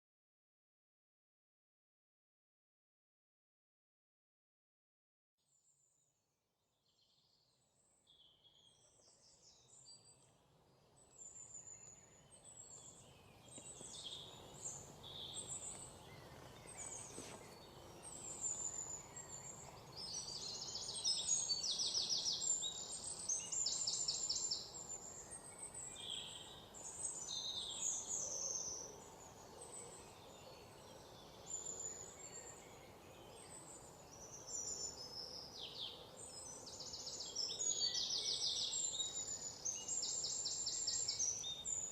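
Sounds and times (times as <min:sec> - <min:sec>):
faint background hiss: 0:06.9 - 0:41.9
birds singing and chirping: 0:10.9 - 0:41.9.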